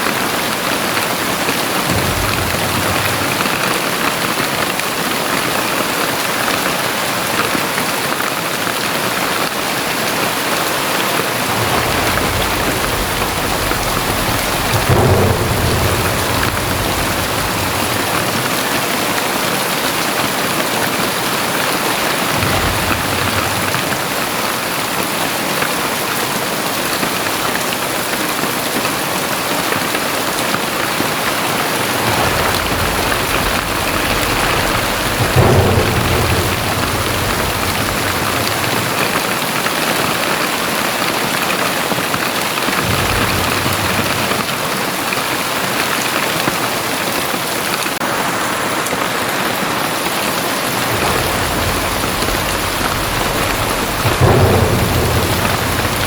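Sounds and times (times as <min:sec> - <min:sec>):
heavy rain pouring: 0:00.0 - 0:56.0
low rumbles: 0:01.7 - 0:05.8, 0:10.5 - 0:25.2, 0:30.4 - 0:40.8, 0:42.7 - 0:45.4, 0:50.5 - 0:56.0.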